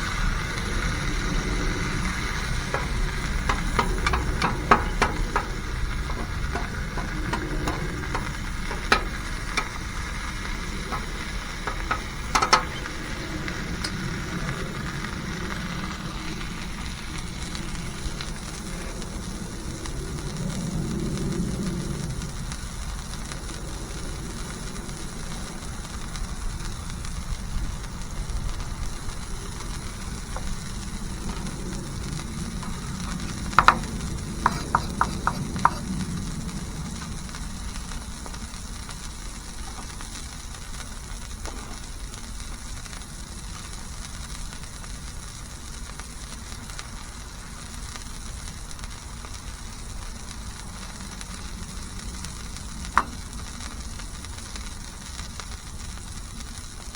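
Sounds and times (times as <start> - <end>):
patties sizzling on a griddle: 0.0 - 56.9
sharp taps: 2.4 - 13.2, 32.6 - 36.0.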